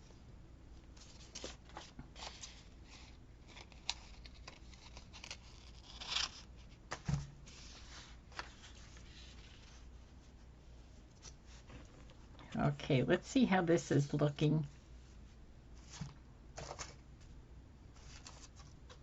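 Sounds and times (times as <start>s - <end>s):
paper rustling: 1.0s - 9.9s, 15.8s - 17.0s, 18.0s - 19.0s.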